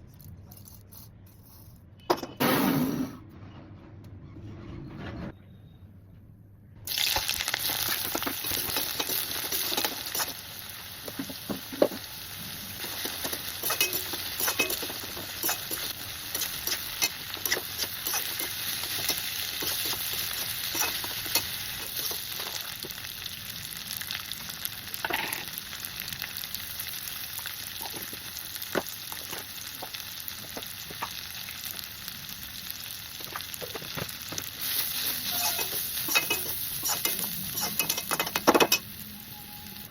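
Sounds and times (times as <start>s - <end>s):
vegetables sizzling in a pan: 6.9s - 39.9s
spatula scraping a pan: 34.6s - 38.4s.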